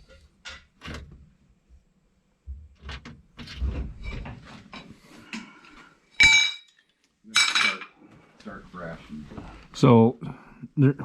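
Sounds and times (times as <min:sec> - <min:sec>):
ringing metallic clink: 0:06.2 - 0:06.8
metal tools knocking and rattling: 0:06.2 - 0:08.0.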